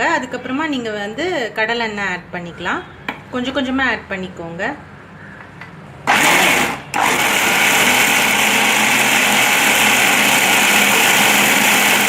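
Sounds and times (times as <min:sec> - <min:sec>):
mixer grinder running: 0:06.1 - 0:12.0.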